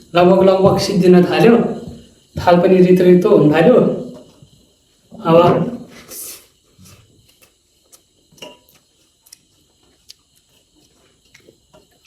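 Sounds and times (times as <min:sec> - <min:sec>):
eating clicks and smacks: 0:07.2 - 0:12.0.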